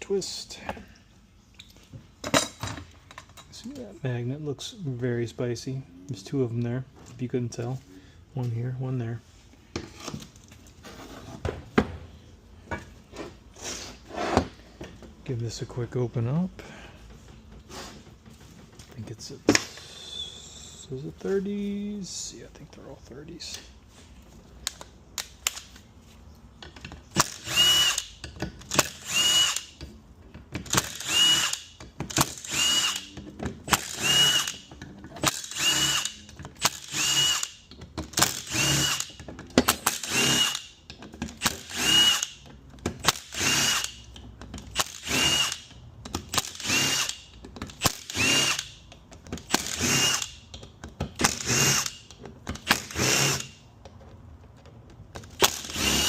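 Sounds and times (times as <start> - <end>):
cordless drill spinning bolts: 27.1 - 29.8, 30.6 - 39.2, 39.8 - 50.6, 51.2 - 53.6, 55.3 - 56.0.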